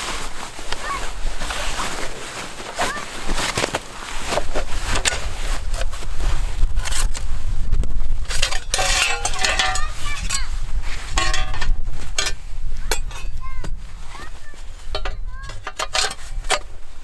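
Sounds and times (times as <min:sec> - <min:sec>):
metal cookware clinking and scraping: 0:08.3 - 0:13.5, 0:14.8 - 0:16.8.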